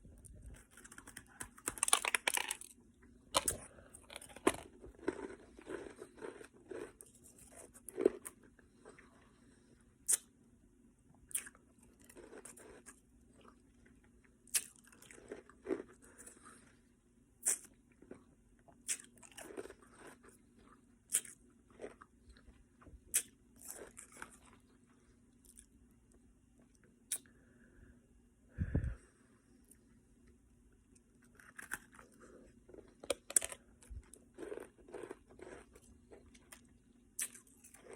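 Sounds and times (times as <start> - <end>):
person chewing ice: 0.5 - 2.8, 3.4 - 9.2, 11.3 - 16.6, 17.4 - 24.8, 31.2 - 37.9.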